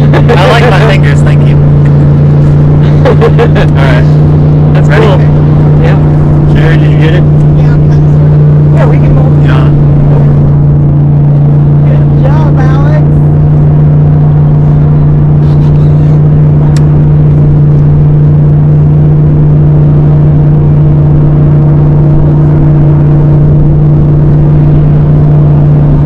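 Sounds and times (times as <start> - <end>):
outboard motor running: 0.0 - 26.0.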